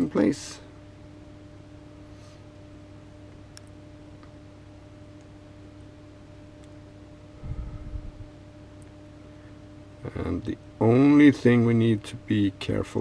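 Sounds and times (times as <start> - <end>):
faint steady hum: 0.0 - 13.0.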